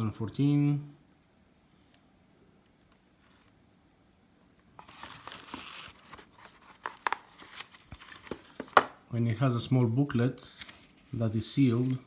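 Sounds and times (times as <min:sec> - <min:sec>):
packaging crinkling: 0:04.8 - 0:08.9.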